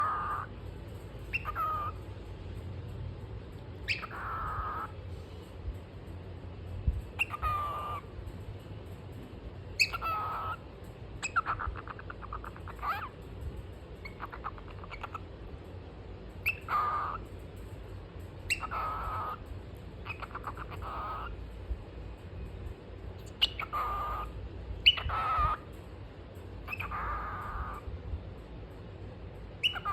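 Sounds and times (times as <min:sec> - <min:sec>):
cockatiel chirping: 0:00.0 - 0:00.5, 0:01.2 - 0:02.1, 0:03.8 - 0:05.0, 0:07.1 - 0:08.1, 0:09.8 - 0:10.6, 0:11.2 - 0:13.2, 0:14.0 - 0:15.3, 0:16.4 - 0:17.3, 0:18.4 - 0:21.4, 0:23.2 - 0:25.7, 0:26.6 - 0:27.9, 0:29.6 - 0:29.9.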